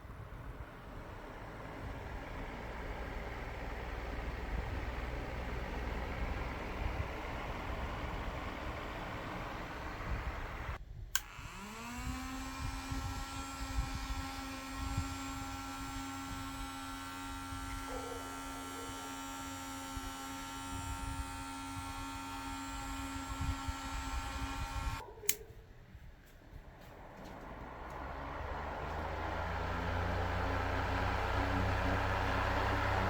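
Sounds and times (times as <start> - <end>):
small fan motor whining: 0.0 - 33.0
switch click: 11.2 - 11.6, 25.2 - 25.4.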